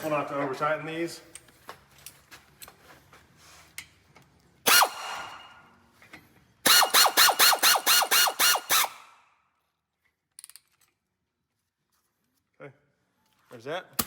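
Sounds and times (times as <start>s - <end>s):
cordless power tool driving bolt: 4.7s - 5.6s, 6.7s - 9.1s
power tool trigger blips: 4.7s - 5.7s, 6.7s - 9.2s.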